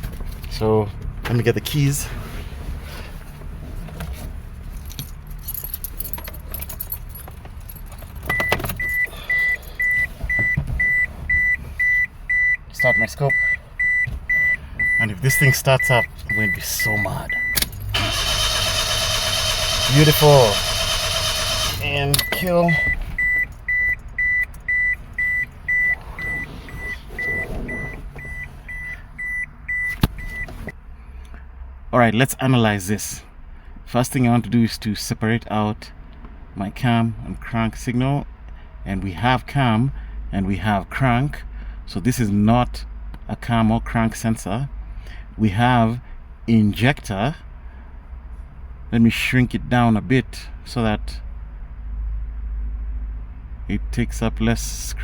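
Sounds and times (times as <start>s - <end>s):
keys jangling and clicking: 4.7s - 9.7s
high electronic warning beep: 8.3s - 17.6s, 21.4s - 30.5s.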